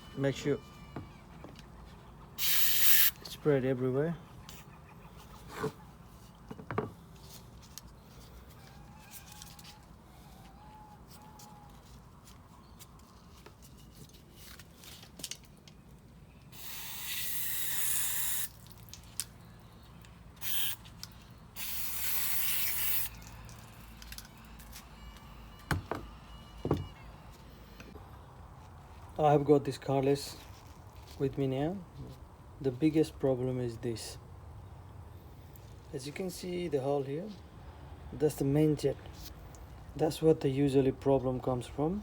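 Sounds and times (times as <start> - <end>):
aerosol spray hissing: 2.4 - 3.2, 16.6 - 18.5, 21.6 - 23.1.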